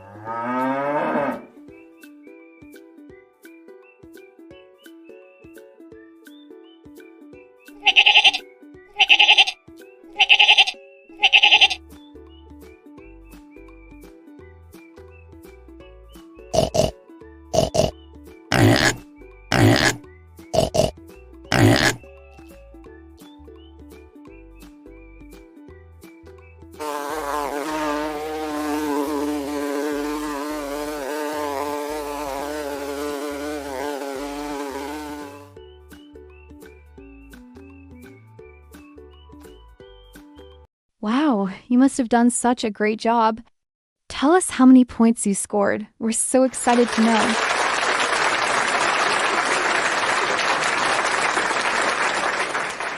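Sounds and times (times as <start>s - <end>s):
light background music: 0.0s - 42.5s
goat or sheep bleating: 7.8s - 8.4s, 9.0s - 9.6s, 10.2s - 11.8s
flying insect buzzing: 16.6s - 16.9s, 17.6s - 17.9s, 18.5s - 20.0s, 26.8s - 35.6s.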